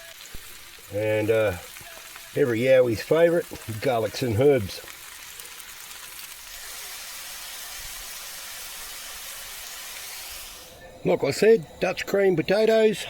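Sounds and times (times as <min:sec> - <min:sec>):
mushrooms sizzling in a pan: 0:00.0 - 0:13.0.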